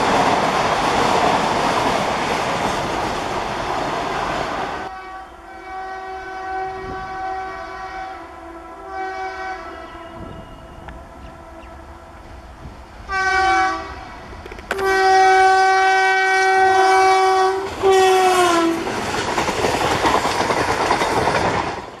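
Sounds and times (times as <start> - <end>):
train clattering past: 0.0 - 5.0, 9.2 - 22.0
locomotive air horn blasts: 4.9 - 11.8, 13.1 - 18.8.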